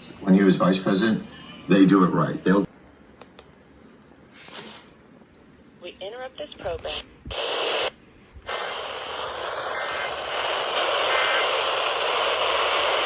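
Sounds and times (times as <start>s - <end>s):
static-like hiss: 5.9s - 13.0s.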